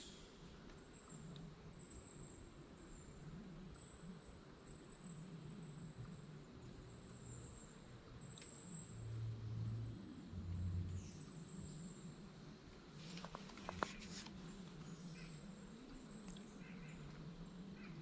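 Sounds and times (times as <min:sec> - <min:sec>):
low hum: 0:08.8 - 0:17.9.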